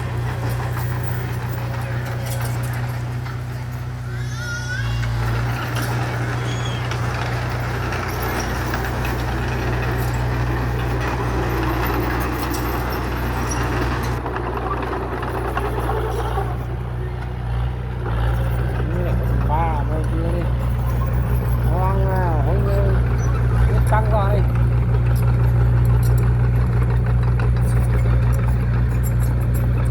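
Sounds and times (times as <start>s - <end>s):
heavy machinery diesel engine: 0.0s - 29.9s.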